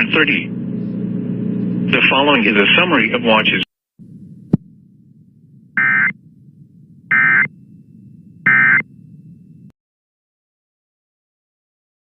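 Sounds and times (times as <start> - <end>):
low hum: 0.0 - 9.7
buzzy data tone bursts: 5.8 - 6.2, 7.1 - 7.6, 8.4 - 9.0.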